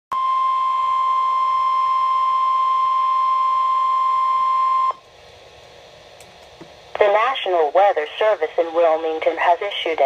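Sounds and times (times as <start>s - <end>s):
steady alarm tone: 0.2s - 5.0s.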